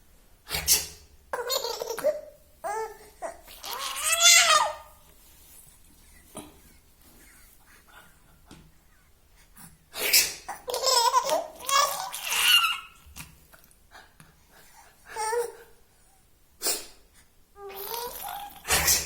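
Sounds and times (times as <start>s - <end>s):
person sneezing: 0.5s - 1.0s, 10.0s - 10.6s, 16.6s - 17.0s, 18.6s - 19.0s.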